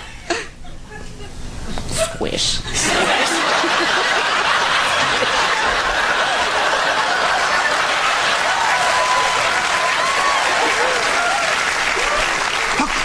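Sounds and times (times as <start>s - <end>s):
audience laughing: 2.8s - 13.0s
audience applauding: 2.9s - 13.0s.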